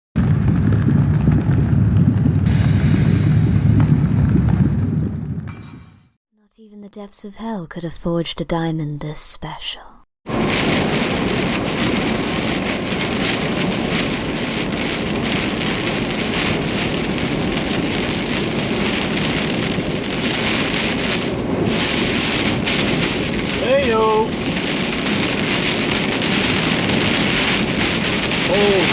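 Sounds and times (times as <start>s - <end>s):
heavy rain on a truck: 10.4s - 28.9s.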